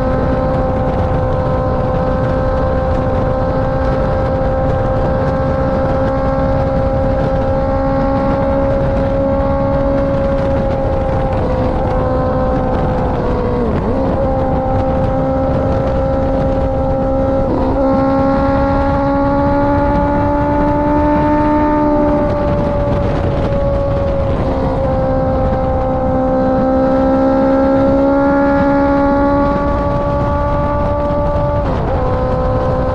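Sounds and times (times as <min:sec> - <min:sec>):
motorcycle engine revving: 0:00.0 - 0:32.9
wind and road noise: 0:00.0 - 0:32.9.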